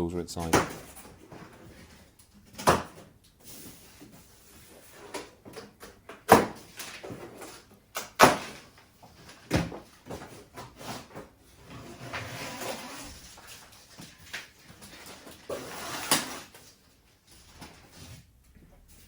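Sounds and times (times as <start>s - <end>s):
cardboard scraping and rustling: 8.6s - 19.0s.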